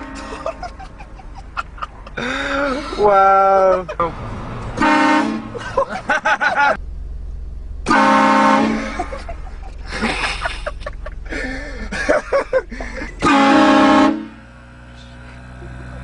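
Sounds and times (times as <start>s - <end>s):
train horn multi-tone chord: 4.8s - 5.5s, 7.9s - 8.9s, 13.2s - 14.7s.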